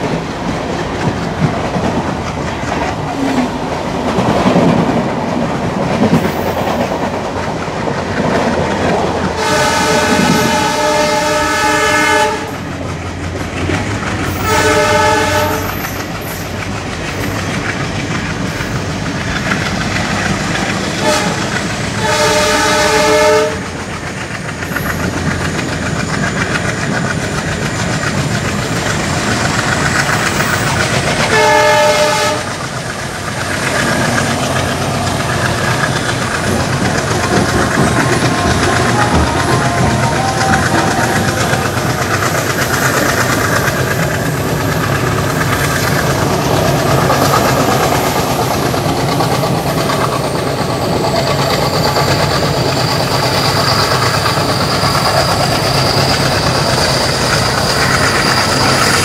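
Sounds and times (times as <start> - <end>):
train wheels clattering on rails: 0.0 - 59.0
locomotive air horn blasts: 9.4 - 12.6, 14.3 - 16.0, 21.0 - 23.7, 31.3 - 32.5.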